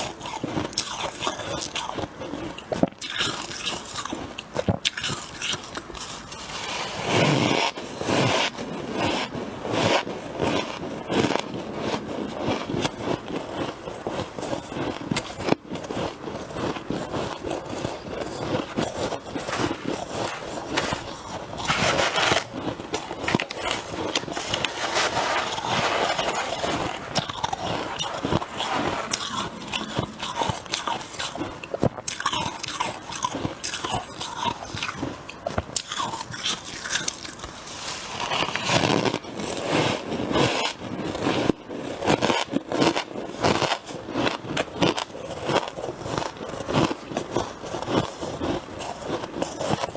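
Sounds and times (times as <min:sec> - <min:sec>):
freezer frost crunching and scraping: 0:00.0 - 0:49.9.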